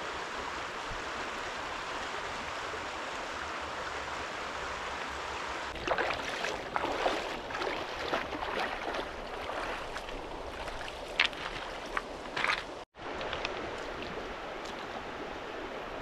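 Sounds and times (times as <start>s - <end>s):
flowing river water: 0.0s - 16.0s
water splashing: 5.7s - 16.0s.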